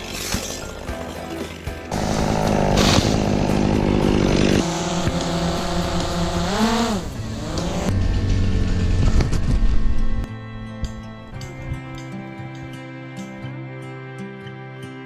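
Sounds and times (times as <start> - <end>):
chainsaw running at high revs: 1.8 - 9.0.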